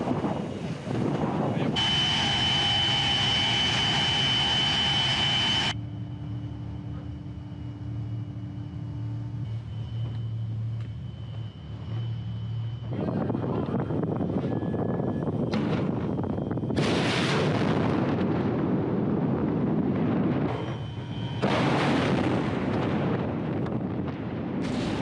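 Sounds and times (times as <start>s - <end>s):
rushing noise: 0.0s - 5.8s
high machine whine: 0.0s - 25.0s
low machine hum: 0.0s - 25.0s
loud machinery hiss: 1.8s - 5.8s.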